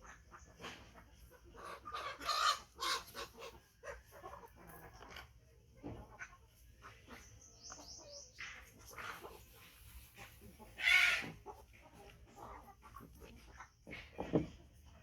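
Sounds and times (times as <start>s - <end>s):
loud animal squawk: 10.8s - 11.4s.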